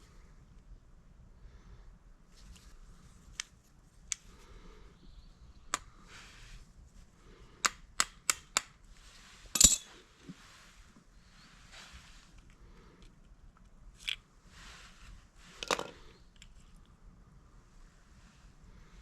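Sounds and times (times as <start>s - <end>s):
metal clank with ring: 9.6s - 9.9s
metallic tool clicks and knocks: 9.6s - 9.9s.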